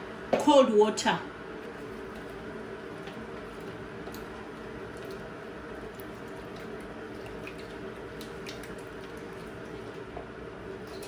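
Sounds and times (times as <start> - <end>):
tap water running into container: 1.6 - 10.1.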